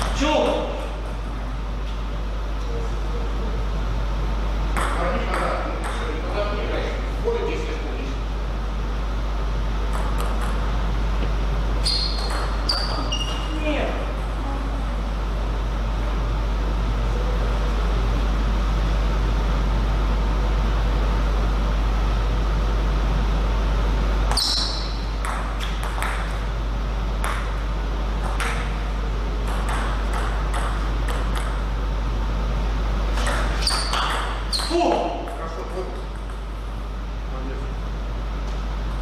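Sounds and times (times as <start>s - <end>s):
low hum in hall: 0.0s - 39.0s
table tennis ball clicking: 29.4s - 31.6s.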